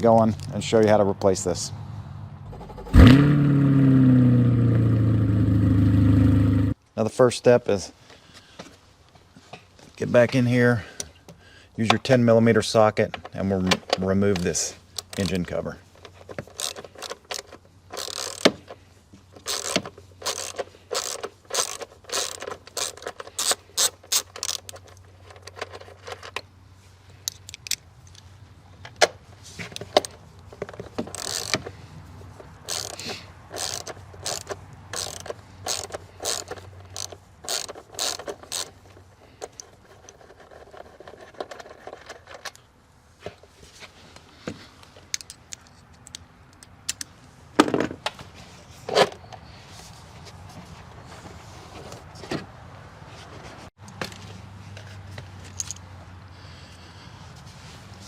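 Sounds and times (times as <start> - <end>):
socket ratchet clicking: 16.5 - 18.6, 19.4 - 26.4, 31.1 - 31.7, 32.6 - 40.2.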